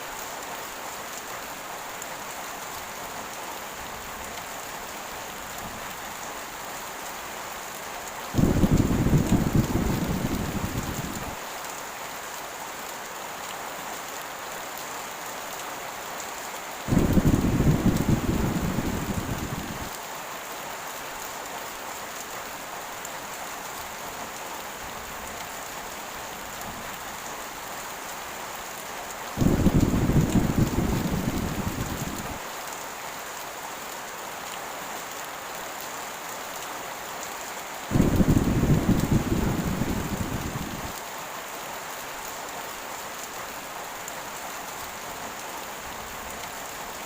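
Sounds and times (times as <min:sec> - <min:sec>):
heavy rain falling: 0:00.0 - 0:47.0
deep thunder rumbles: 0:08.4 - 0:11.4, 0:16.9 - 0:19.9, 0:29.4 - 0:32.4, 0:37.9 - 0:41.0.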